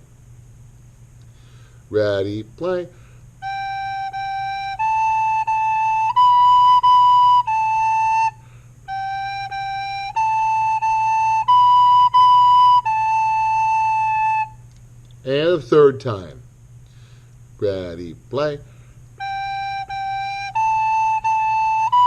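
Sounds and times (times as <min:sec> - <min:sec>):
breath: 0:01.2 - 0:01.9, 0:02.9 - 0:03.3, 0:08.4 - 0:08.8, 0:16.8 - 0:17.4, 0:18.7 - 0:19.1
recorder playing notes: 0:03.4 - 0:14.6, 0:19.2 - 0:22.0.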